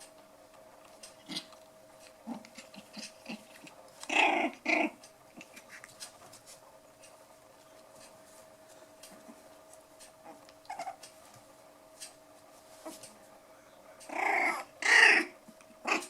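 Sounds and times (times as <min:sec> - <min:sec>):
puppy growls: 0:01.0 - 0:06.1, 0:10.2 - 0:11.1, 0:14.0 - 0:16.0
puppies scuffling: 0:05.3 - 0:13.1.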